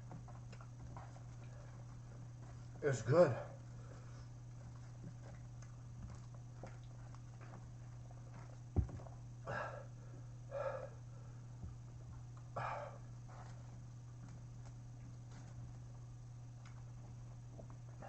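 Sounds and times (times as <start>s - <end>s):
steady low hum: 0.0s - 18.0s
man breathing hard: 9.4s - 11.5s, 12.6s - 13.1s.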